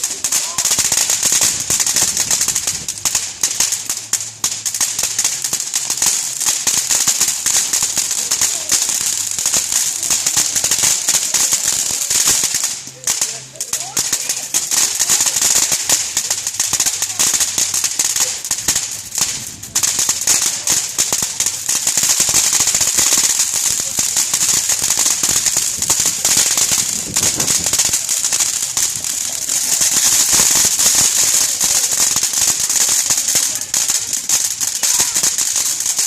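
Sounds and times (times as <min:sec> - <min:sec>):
bonfire crackling and popping: 0:00.0 - 0:36.0
fire hiss: 0:00.0 - 0:36.0.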